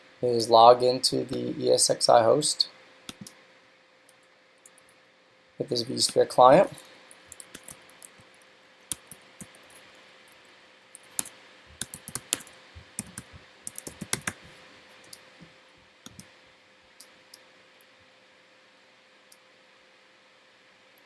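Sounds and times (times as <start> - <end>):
typing on computer keyboard: 7.3 - 8.1, 8.9 - 9.7, 11.0 - 14.5.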